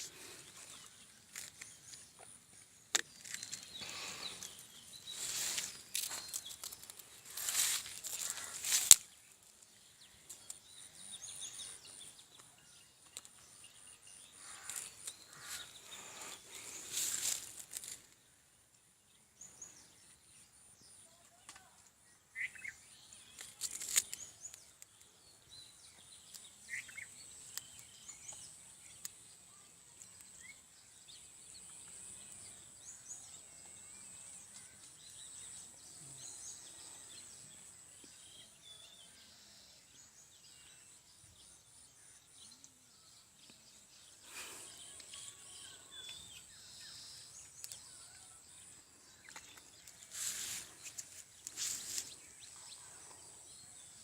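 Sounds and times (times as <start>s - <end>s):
bird chirps: 21.6s - 54.0s.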